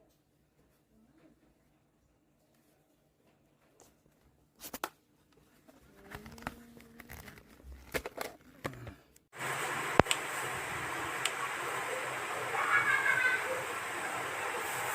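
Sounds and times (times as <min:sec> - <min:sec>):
clicks and rustling of handling: 0:04.6 - 0:09.2.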